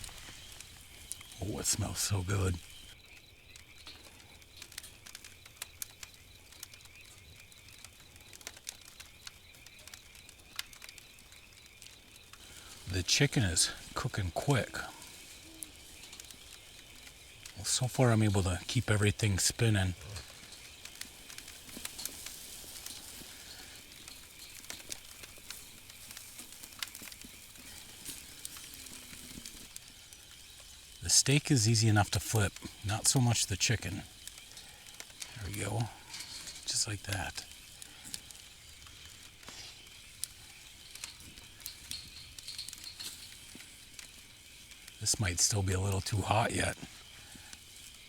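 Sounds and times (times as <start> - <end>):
meat sizzling: 0.0 - 48.0
wood fire crackling and popping: 0.0 - 48.0
faint high hiss: 12.4 - 48.0.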